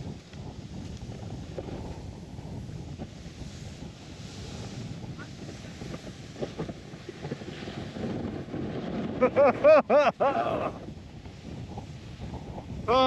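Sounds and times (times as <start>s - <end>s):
sled sliding on snow: 0.0s - 13.0s
wind buffeting microphone: 0.0s - 13.0s.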